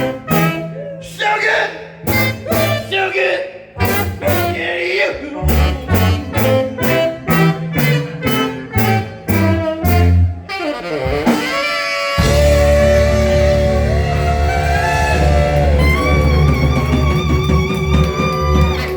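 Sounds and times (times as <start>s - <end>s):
live band playing: 0.0s - 1.0s, 1.8s - 2.9s, 3.8s - 4.7s, 5.4s - 18.9s
steady drum beat: 2.1s - 2.9s, 5.4s - 10.2s, 11.1s - 18.9s
descending run of notes: 12.2s - 18.9s.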